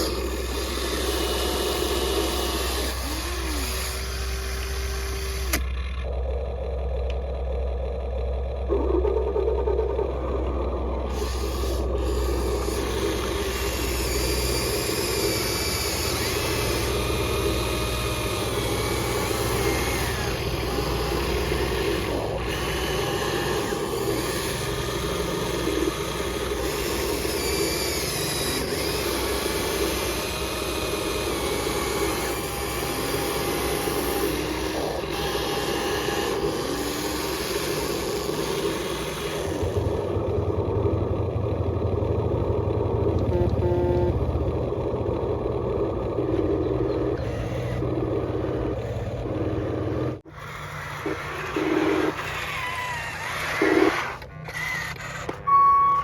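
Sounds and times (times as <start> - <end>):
small electric motors whining: 0.0 - 6.3, 6.9 - 56.0
rasping scraping noise: 11.1 - 40.0, 48.8 - 55.5.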